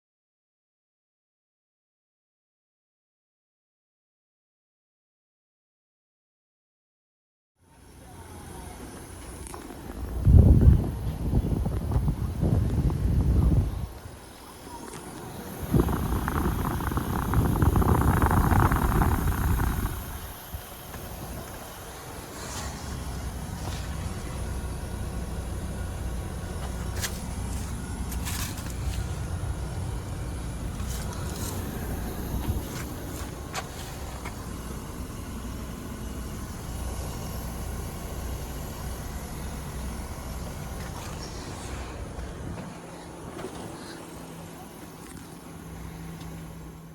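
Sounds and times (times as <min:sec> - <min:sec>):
condenser units humming and hissing: 0:07.7 - 0:46.9
fan whoosh: 0:10.0 - 0:35.4.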